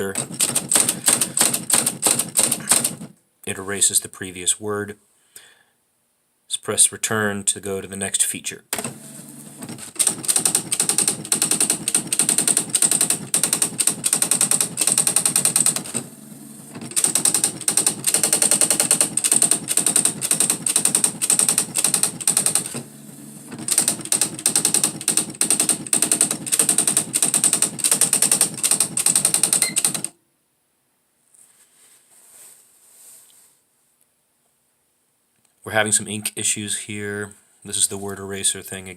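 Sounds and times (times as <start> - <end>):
electronic typewriter printing: 0.0 - 3.1, 8.8 - 30.1.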